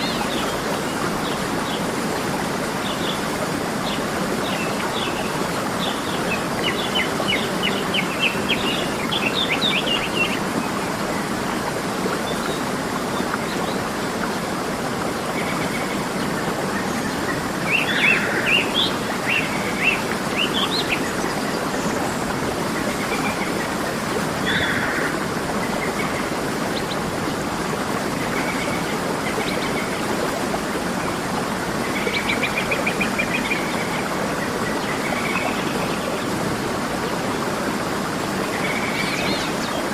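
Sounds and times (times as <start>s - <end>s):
waterfall rushing: 0.0s - 39.9s
birds chirping: 24.4s - 27.1s.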